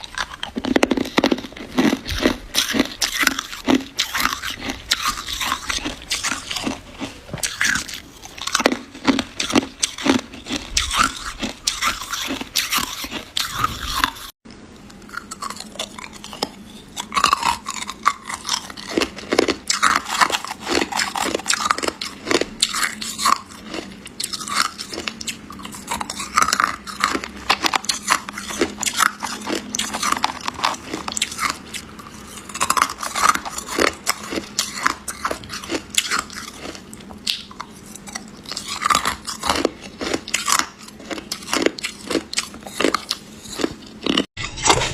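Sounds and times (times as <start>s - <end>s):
ice being chewed: 0.0s - 44.9s.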